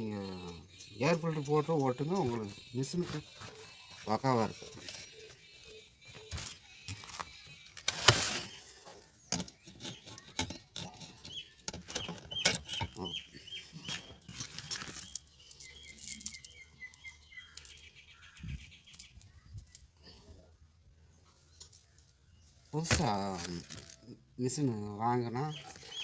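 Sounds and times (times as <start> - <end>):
small bird chirping: 0.0 - 20.0, 25.0 - 26.0.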